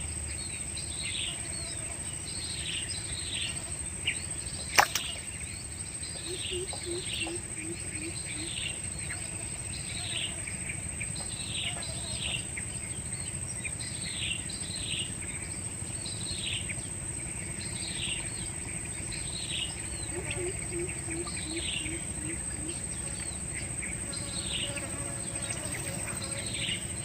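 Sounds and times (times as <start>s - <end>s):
high-pitched insect drone: 2.2s - 10.6s, 19.6s - 27.0s.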